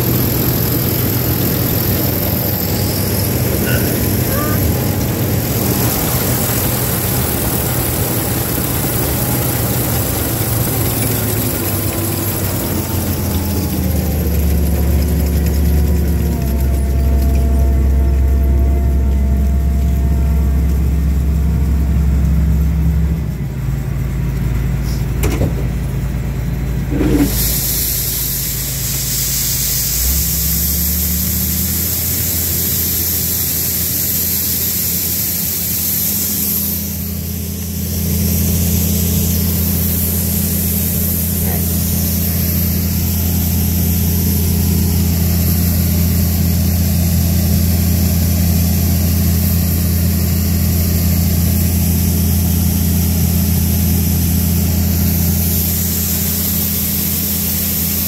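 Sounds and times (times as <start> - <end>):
combine harvester drone: 0.0 - 58.0
high hiss: 27.0 - 58.0.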